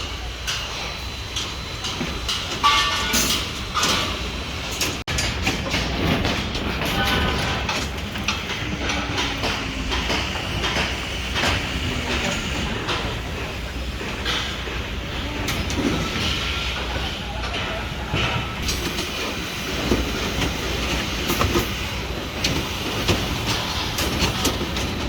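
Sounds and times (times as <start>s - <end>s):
metal rebar clanking: 1.4s - 4.2s.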